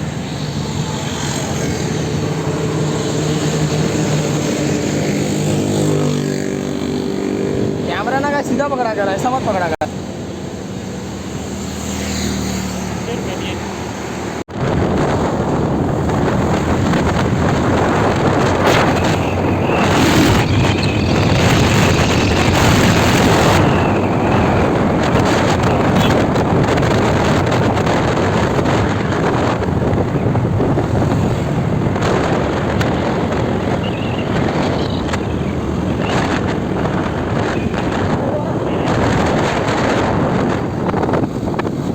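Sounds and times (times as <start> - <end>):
motorcycle engine: 0.0 - 8.0, 14.8 - 41.9
road noise: 0.0 - 41.9
wind on microphone: 14.4 - 41.9.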